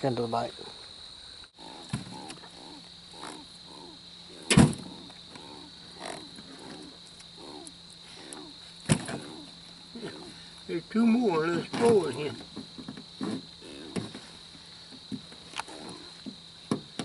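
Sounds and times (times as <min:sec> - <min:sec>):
high insect drone: 0:00.0 - 0:17.0.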